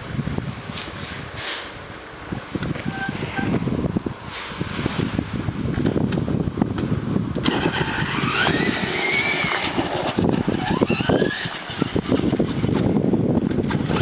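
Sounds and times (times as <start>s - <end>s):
toy truck motor whine: 7.4s - 12.0s.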